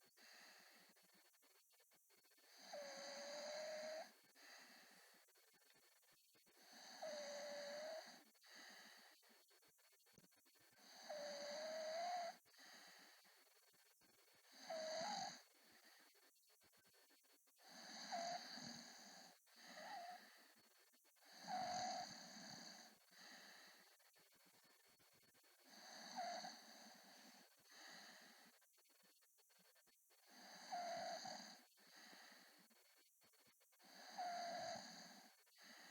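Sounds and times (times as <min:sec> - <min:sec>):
man snoring with squeaky whistles: 0:02.5 - 0:04.1, 0:06.7 - 0:08.2, 0:10.8 - 0:12.4, 0:14.5 - 0:15.4, 0:17.7 - 0:20.2, 0:21.3 - 0:22.8, 0:25.7 - 0:27.1, 0:30.4 - 0:31.6, 0:33.9 - 0:35.2.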